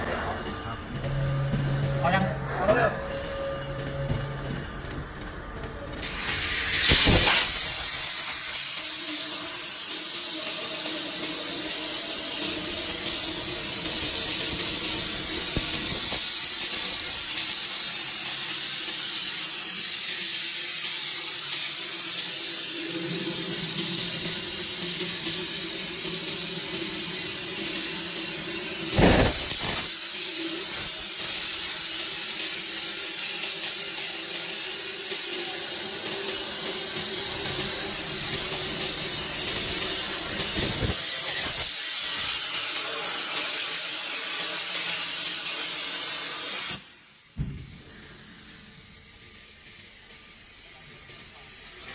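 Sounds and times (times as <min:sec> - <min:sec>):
plasma torch hissing: 0:05.9 - 0:51.9
plasma torch blast: 0:06.0 - 0:10.4, 0:11.6 - 0:17.9, 0:28.6 - 0:33.3, 0:36.0 - 0:49.0.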